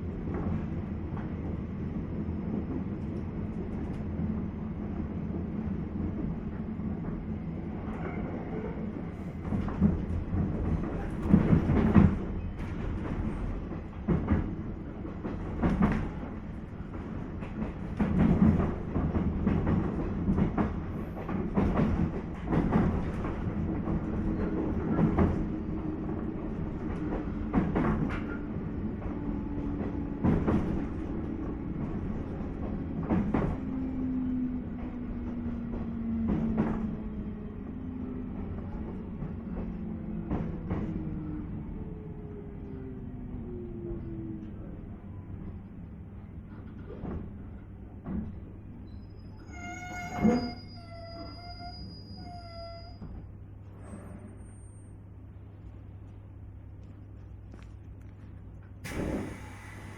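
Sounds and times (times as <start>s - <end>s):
train low rumble: 0.0s - 59.9s.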